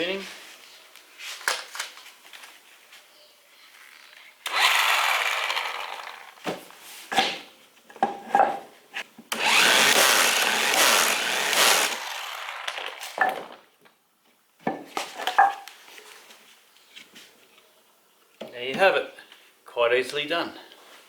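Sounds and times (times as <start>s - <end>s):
power tool running: 4.5s - 6.4s, 9.3s - 13.5s.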